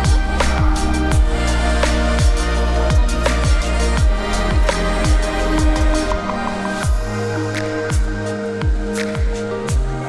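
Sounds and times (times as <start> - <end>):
electronic music: 0.0 - 10.0.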